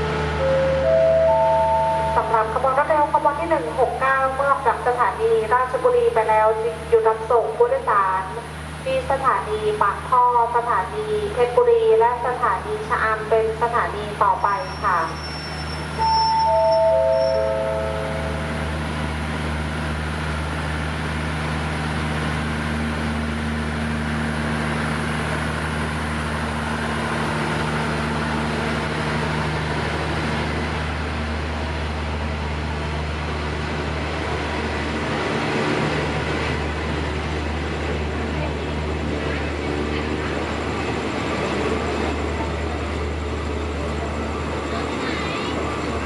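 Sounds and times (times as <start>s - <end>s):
descending four-note chime: 0.4s - 2.2s.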